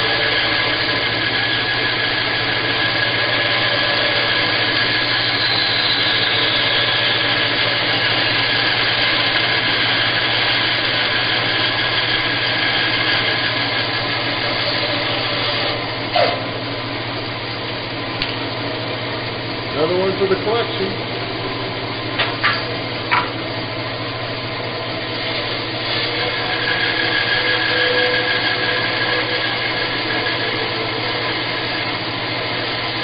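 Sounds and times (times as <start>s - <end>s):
bandsaw cutting wood: 0.0s - 16.5s, 25.2s - 33.0s.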